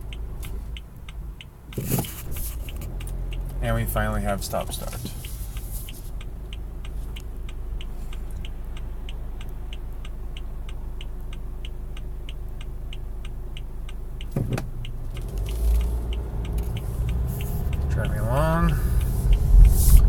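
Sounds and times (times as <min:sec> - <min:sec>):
car engine starting and running: 0:00.0 - 0:20.0
turn signal ticking: 0:00.0 - 0:20.0
thump: 0:14.4 - 0:14.7.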